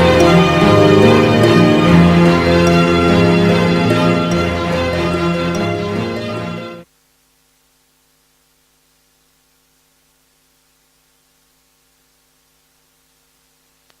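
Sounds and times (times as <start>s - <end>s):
faint electrical hum with hiss: 6.8s - 14.0s.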